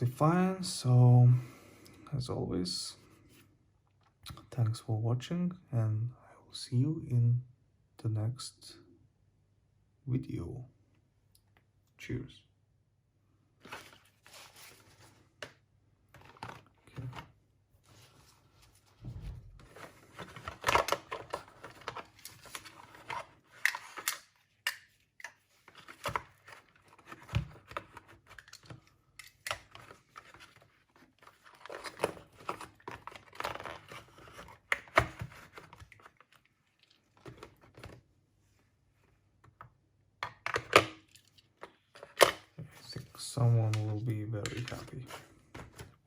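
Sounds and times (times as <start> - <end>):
objects rustling: 16.1 - 24.4.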